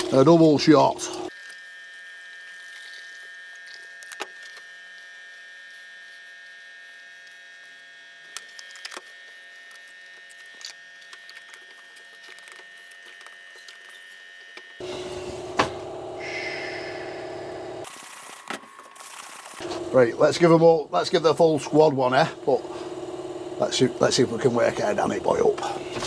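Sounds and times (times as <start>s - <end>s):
faint high whine: 14.8s - 26.0s.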